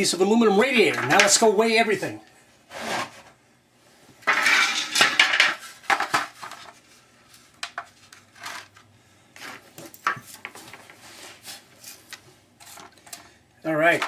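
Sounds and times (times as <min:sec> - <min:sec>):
scrap metal clinking and clattering: 0:04.2 - 0:06.7.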